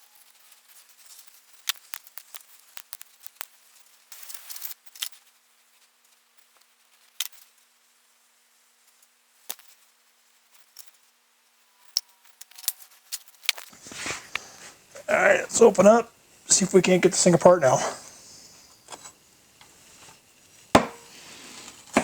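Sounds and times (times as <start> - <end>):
rush of hiss: 13.7 - 18.9, 21.0 - 22.0.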